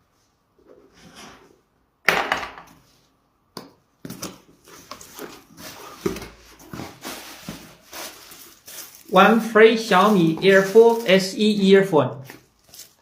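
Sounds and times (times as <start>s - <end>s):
packaging rustling: 4.1s - 11.6s, 12.2s - 13.0s.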